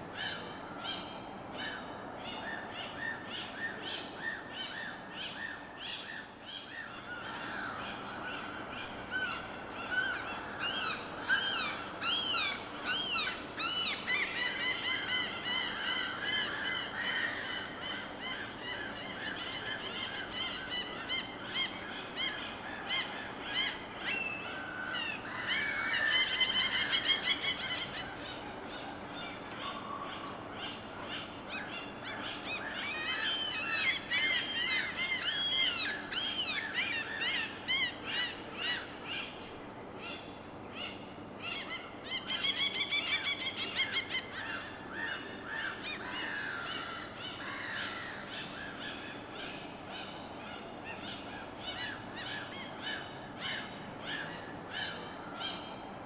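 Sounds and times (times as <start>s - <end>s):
faint ambient hiss: 0.0s - 56.0s.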